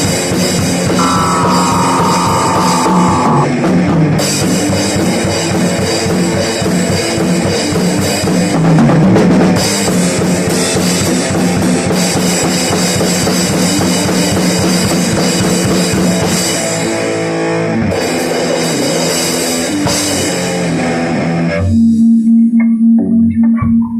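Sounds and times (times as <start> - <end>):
electric guitar: 1.0 - 3.5.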